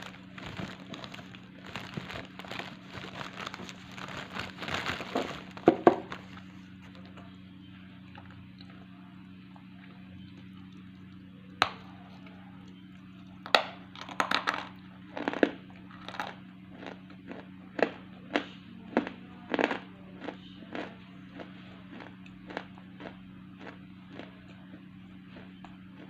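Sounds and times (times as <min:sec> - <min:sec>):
sharp cracks and crunches: 0:00.0 - 0:06.4, 0:13.5 - 0:18.0
low electrical hum: 0:00.0 - 0:26.0.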